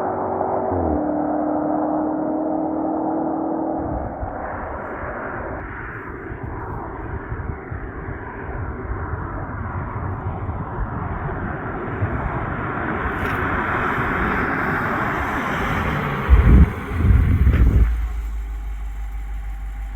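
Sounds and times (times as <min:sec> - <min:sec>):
car engine rumble: 0:00.0 - 0:19.9
road noise: 0:00.0 - 0:19.9
loud low thump: 0:16.3 - 0:19.9.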